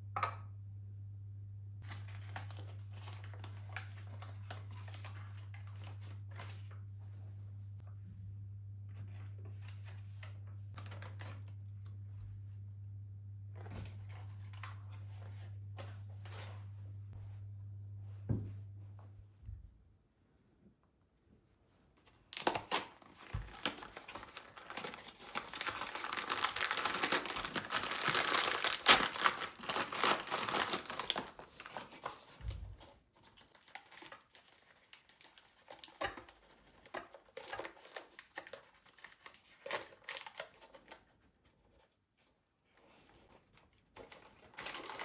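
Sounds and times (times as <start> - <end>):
wrapping material crinkling: 22.3 - 32.5, 44.0 - 45.0.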